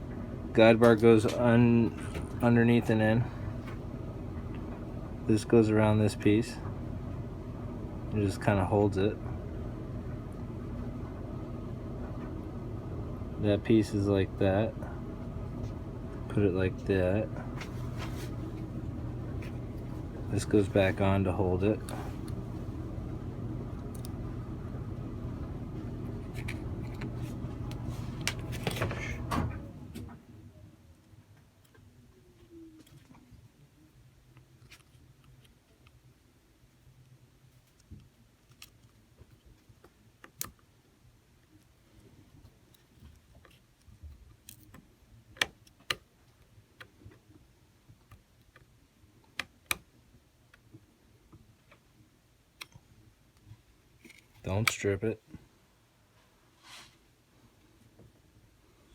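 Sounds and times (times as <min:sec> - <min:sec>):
low hum: 0:00.0 - 0:30.6.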